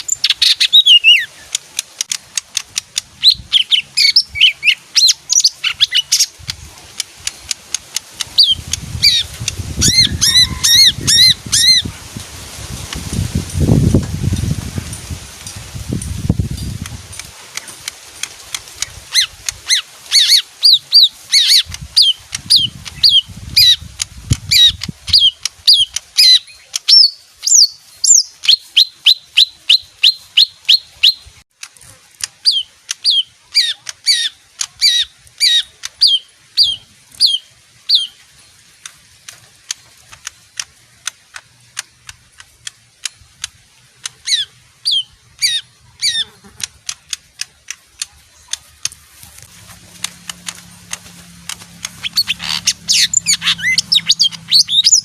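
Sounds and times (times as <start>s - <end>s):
faint ticks: 1.4s - 3.2s, 33.7s - 36.0s, 38.3s - 44.3s, 46.2s - 54.4s
bird whistling sharp notes: 51.9s - 55.0s.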